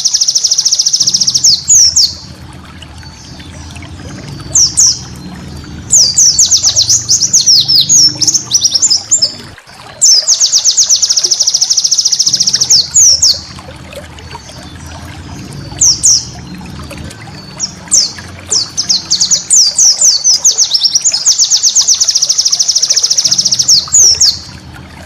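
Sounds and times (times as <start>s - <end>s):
bird singing high chirps and trill: 0.0s - 24.7s
low steady rumble: 1.0s - 10.9s, 12.3s - 21.4s.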